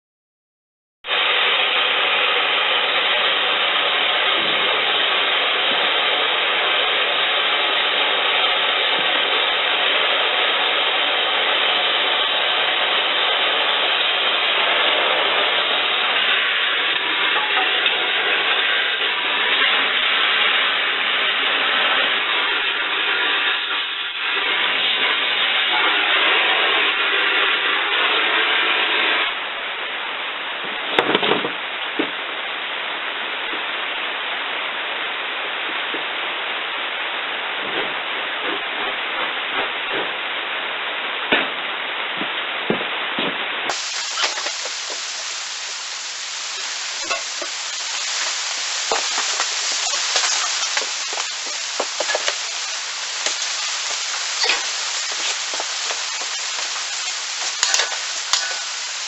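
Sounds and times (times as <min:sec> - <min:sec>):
gas torch flame hissing: 0:01.1 - 0:29.3, 0:43.7 - 0:59.0.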